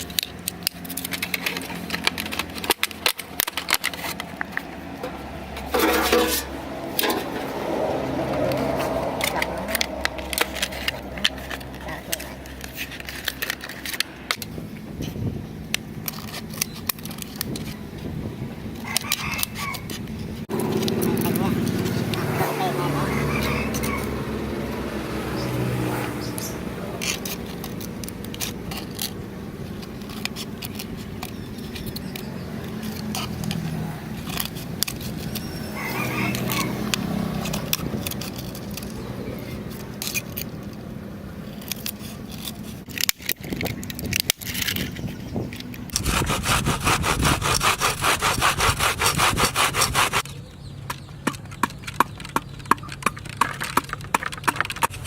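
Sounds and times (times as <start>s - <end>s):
hand saw cutting: 0.0s - 14.5s, 18.8s - 40.8s, 41.6s - 50.3s
sharp taps and clicks: 50.8s - 55.0s.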